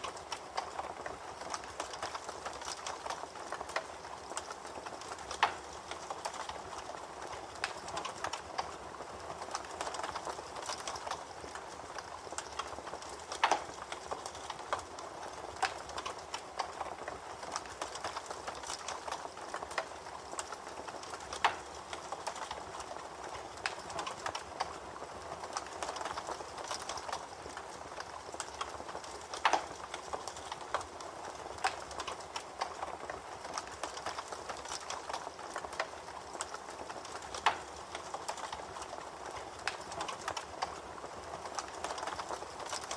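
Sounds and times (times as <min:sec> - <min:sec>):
campfire crackling and popping: 0:00.0 - 0:42.9.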